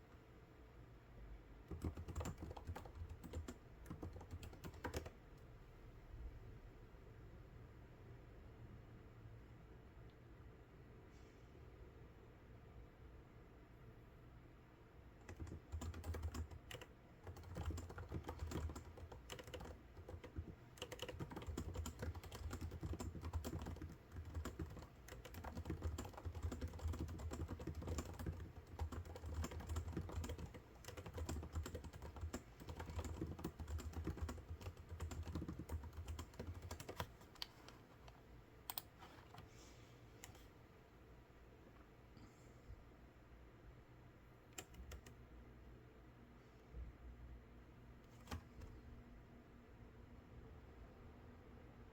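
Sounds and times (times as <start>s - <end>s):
typing on computer keyboard: 1.7s - 5.2s, 15.2s - 37.7s, 38.7s - 39.4s, 44.5s - 45.2s, 48.2s - 48.7s.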